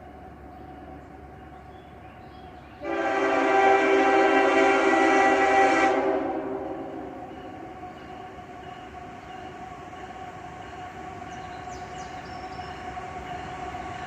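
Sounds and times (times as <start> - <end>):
train wheels rumbling on rails: 0.0 - 14.0.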